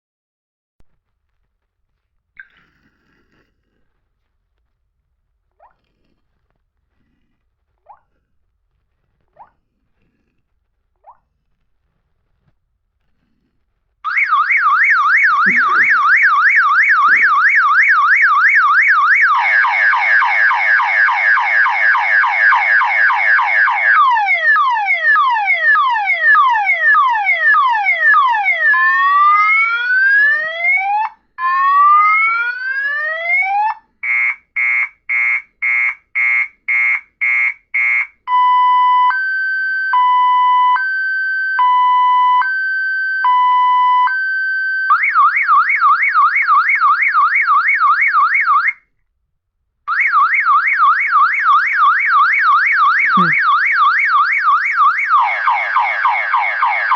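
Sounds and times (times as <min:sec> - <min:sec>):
car alarm siren from phone: 0:14.1 - 0:48.8, 0:49.9 - 0:56.9.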